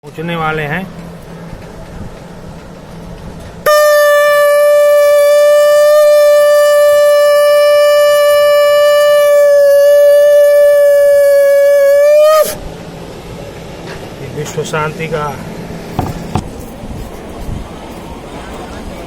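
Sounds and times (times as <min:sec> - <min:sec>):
conch shell blown: 0:03.6 - 0:12.6.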